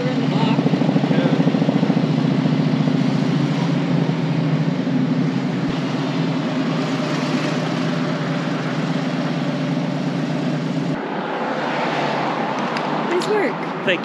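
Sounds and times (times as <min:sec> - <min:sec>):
motorcycle engine running: 0:00.0 - 0:11.0
wind and road noise: 0:00.0 - 0:14.0.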